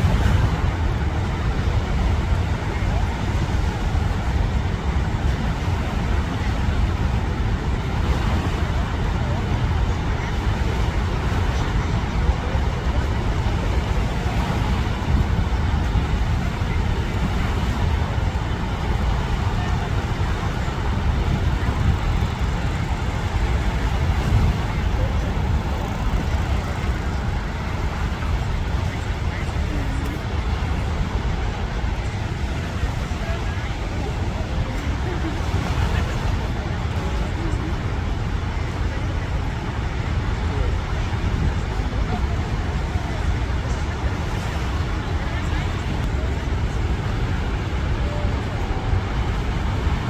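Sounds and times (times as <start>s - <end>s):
waterfall roaring: 0.0s - 50.0s.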